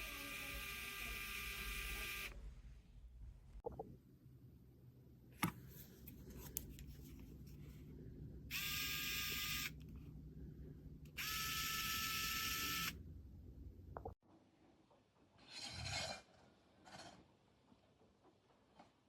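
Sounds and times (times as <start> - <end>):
electric screwdriver motor spinning: 0.0 - 2.4, 8.5 - 9.8, 11.2 - 13.0.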